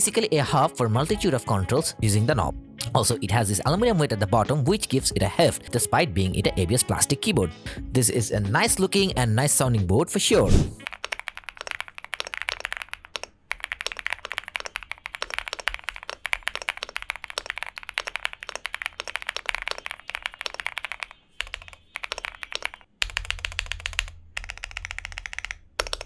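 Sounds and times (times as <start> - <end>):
fast typing on mechanical keyboard: 10.8 - 26.0.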